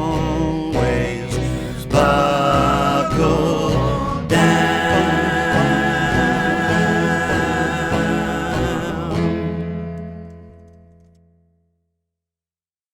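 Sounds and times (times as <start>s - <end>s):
sustained sung note with chord: 2.0s - 9.5s.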